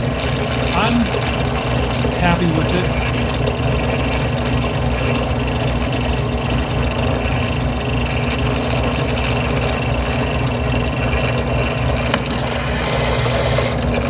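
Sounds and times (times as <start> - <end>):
drill press motor humming: 11.3 - 14.0
drill bit grinding glass: 12.2 - 14.0.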